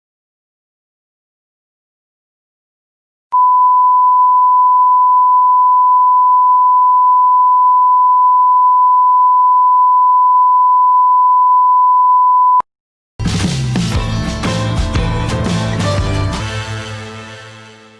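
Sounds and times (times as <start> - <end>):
music: 13.2 - 17.9.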